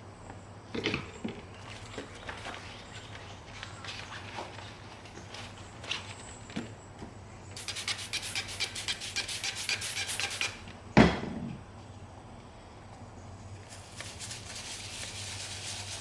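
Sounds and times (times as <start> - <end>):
brush scrubbing leather: 7.6 - 10.6, 13.7 - 16.0.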